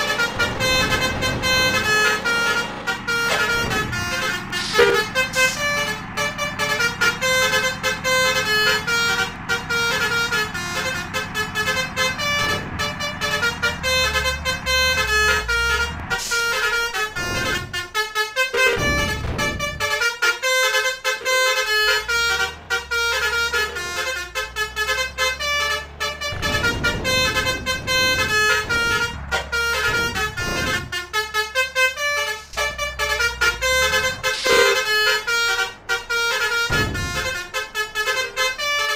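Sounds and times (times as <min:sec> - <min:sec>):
bus musical horns: 0:00.0 - 0:38.9
road traffic rumble: 0:00.0 - 0:38.9
passing vehicles whooshing: 0:22.0 - 0:31.2.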